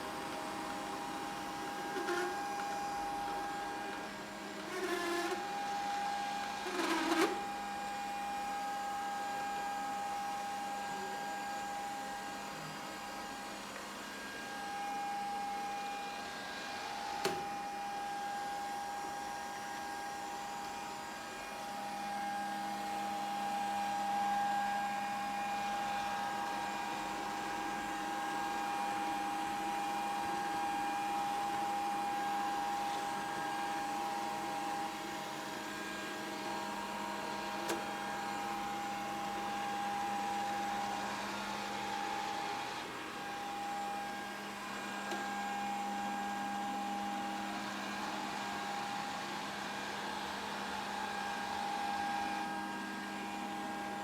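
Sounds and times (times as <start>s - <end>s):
robot vacuum cleaner whine: 0.0s - 54.0s.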